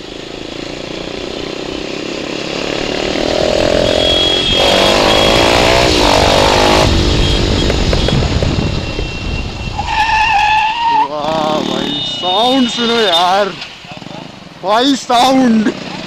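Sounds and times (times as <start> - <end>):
motorcycle accelerating: 0.0 - 10.2, 11.1 - 16.0
exhaust pops and crackles: 6.8 - 9.9.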